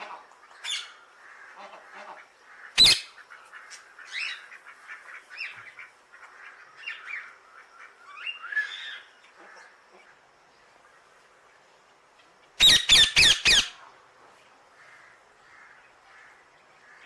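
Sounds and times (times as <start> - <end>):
parrot chirping: 2.8 - 3.2, 12.6 - 13.8.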